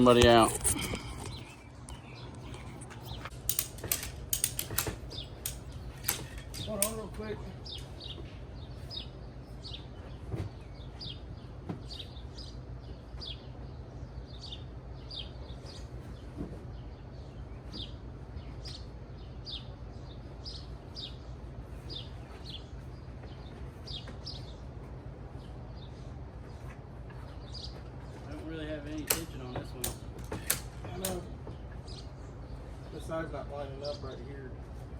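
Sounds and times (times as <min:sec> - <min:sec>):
small bird chirping: 0:00.0 - 0:03.8.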